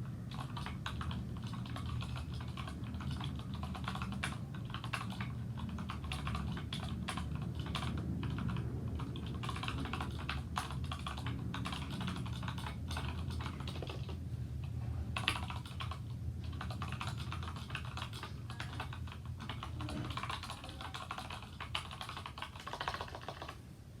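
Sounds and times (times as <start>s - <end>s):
mechanical keyboard typing: 0.1s - 14.2s, 15.1s - 23.6s.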